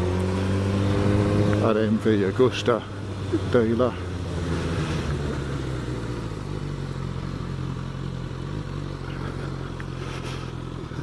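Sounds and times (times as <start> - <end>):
motorcycle engine running: 0.0 - 11.0
wind and road noise: 0.0 - 11.0.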